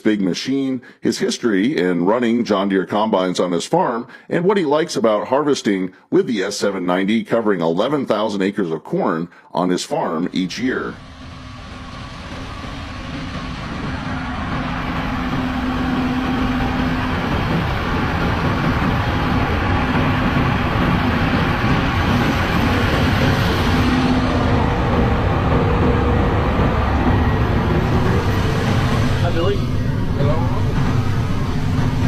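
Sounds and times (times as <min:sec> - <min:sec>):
combine harvester drone: 0:10.9 - 0:32.0.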